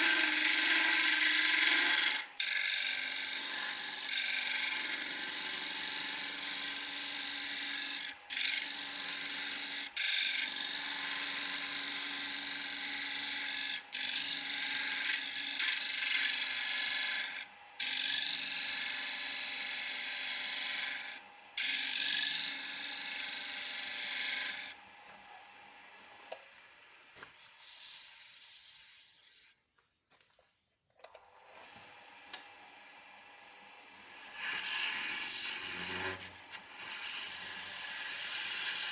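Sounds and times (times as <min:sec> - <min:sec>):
faint motor hum: 0:00.0 - 0:28.8, 0:30.3 - 0:38.9
wood lathe chisel scraping: 0:00.0 - 0:29.6, 0:33.9 - 0:38.9.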